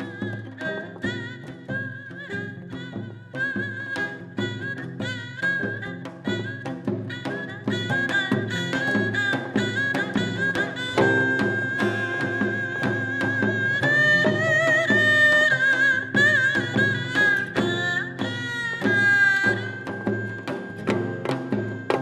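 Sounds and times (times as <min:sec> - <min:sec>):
plucked strings and drum strokes: 0:00.0 - 0:22.0
wavering high bowed melody: 0:00.0 - 0:22.0
band playing: 0:07.4 - 0:22.0.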